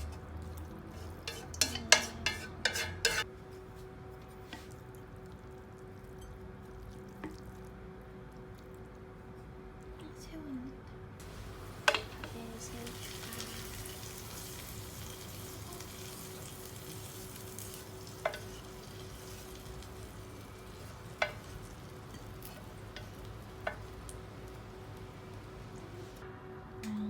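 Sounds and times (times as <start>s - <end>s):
steady hiss: 11.2s - 15.2s.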